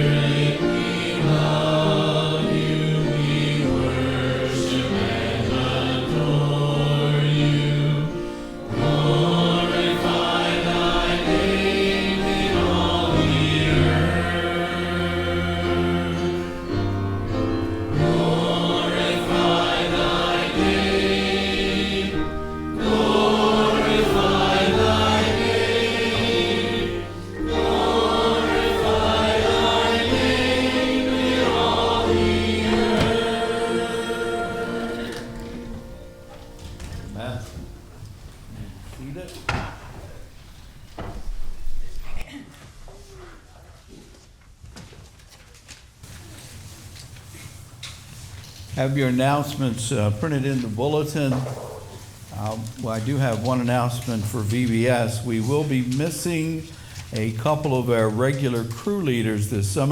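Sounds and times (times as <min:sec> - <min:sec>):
instrumental accompaniment: 0:00.0 - 0:38.3
group singing a hymn: 0:00.0 - 0:38.6, 0:46.0 - 0:59.9.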